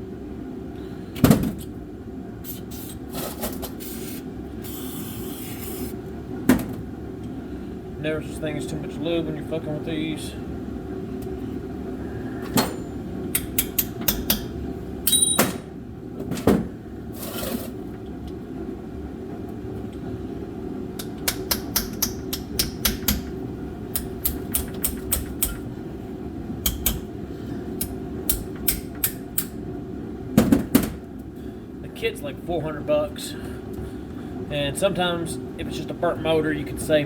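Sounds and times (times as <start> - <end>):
heater humming: 0.0 - 37.0
short metallic ring: 15.1 - 15.5.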